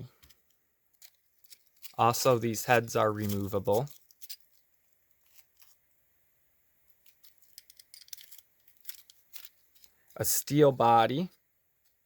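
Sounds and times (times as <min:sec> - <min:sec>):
small clicks and rustles: 0:00.1 - 0:05.9, 0:06.8 - 0:10.2.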